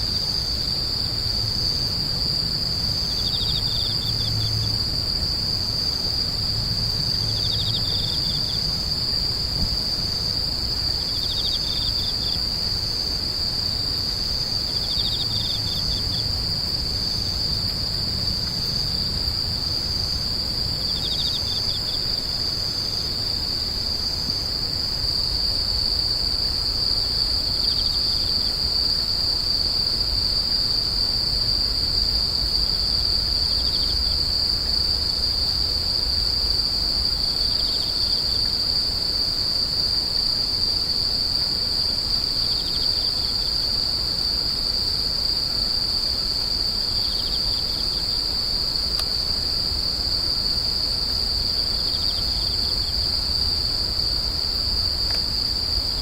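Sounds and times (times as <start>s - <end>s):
insect high-pitched trill: 2.6s - 9.4s, 10.1s - 24.5s.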